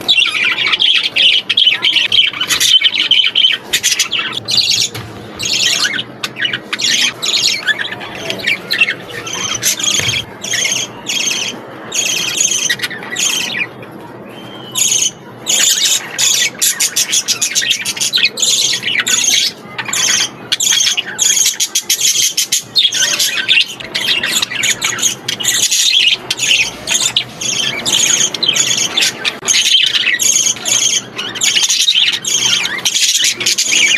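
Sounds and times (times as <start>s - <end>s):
budgerigars chattering and chirping: 0.0s - 13.8s, 14.4s - 33.9s.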